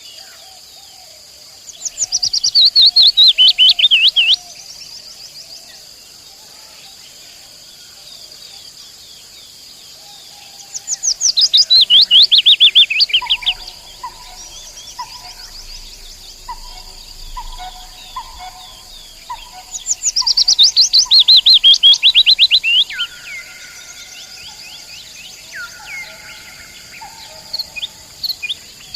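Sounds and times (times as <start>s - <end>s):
high insect drone: 0.0s - 28.9s
nightingale singing: 1.7s - 5.6s, 10.1s - 28.9s.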